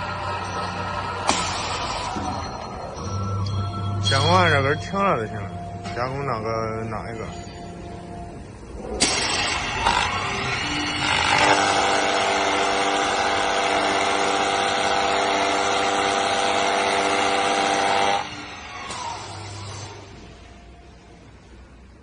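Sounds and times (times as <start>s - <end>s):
wood cutting noise: 9.0s - 20.2s
lathe motor whine: 9.1s - 21.2s.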